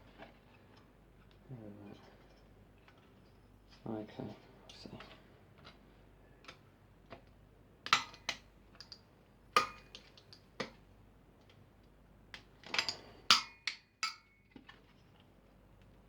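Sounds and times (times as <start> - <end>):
clicks of tools and metal parts: 7.9 - 9.0, 12.4 - 14.3.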